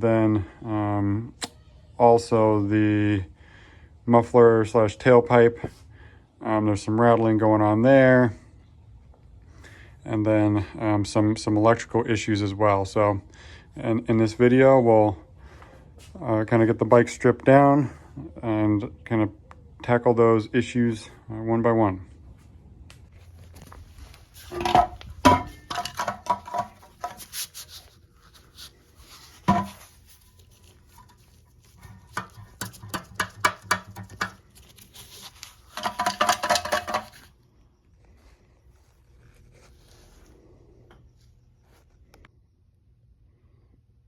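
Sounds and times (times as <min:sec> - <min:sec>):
metal hand tools clinking: 0:24.4 - 0:27.4, 0:29.4 - 0:31.2, 0:31.8 - 0:37.3.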